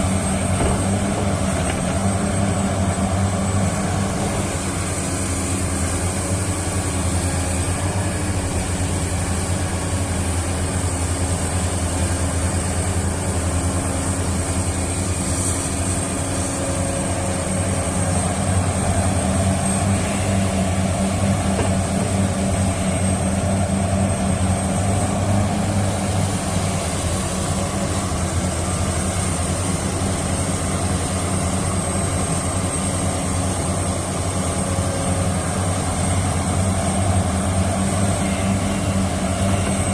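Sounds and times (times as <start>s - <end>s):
excavator engine drone: 0.0s - 39.9s.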